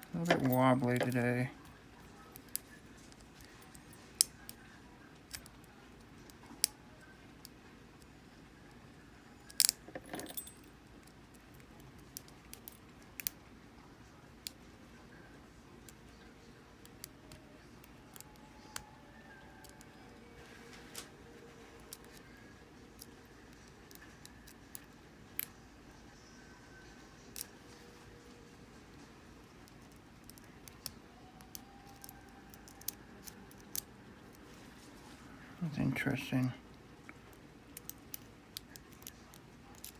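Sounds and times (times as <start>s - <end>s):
lock pick metallic clicks: 9.5s - 11.1s
lock picking clicks: 9.5s - 11.1s, 29.6s - 33.9s, 37.8s - 39.9s
metallic jangle and rattle: 9.7s - 10.8s.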